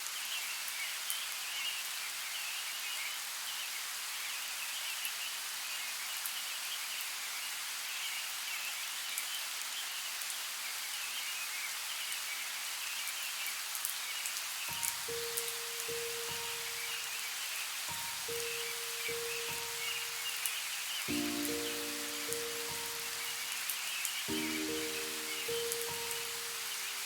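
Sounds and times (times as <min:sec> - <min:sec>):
light rain falling: 0:00.0 - 0:27.0
raindrops pattering: 0:13.7 - 0:27.0
birds chirping: 0:14.7 - 0:27.0.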